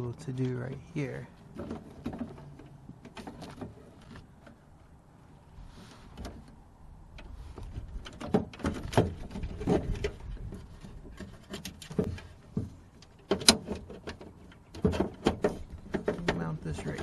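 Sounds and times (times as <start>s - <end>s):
metal parts knocking and rattling: 7.7s - 17.0s.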